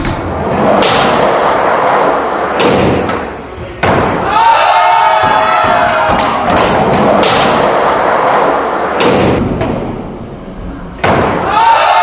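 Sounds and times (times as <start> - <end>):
skateboard rolling with clacks: 0.0 - 3.5
skateboard landing slam: 0.2 - 1.5, 2.6 - 4.3, 5.2 - 8.2, 9.0 - 10.0, 11.0 - 11.5.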